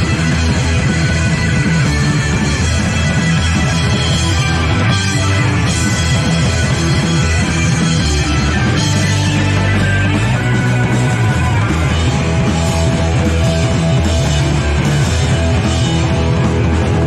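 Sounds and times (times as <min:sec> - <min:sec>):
punk rock band playing live: 0:00.0 - 0:17.0.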